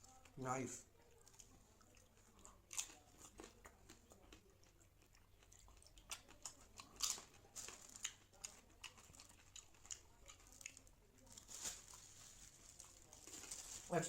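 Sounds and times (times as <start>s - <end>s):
crisp shells crunching: 10.4s - 14.0s.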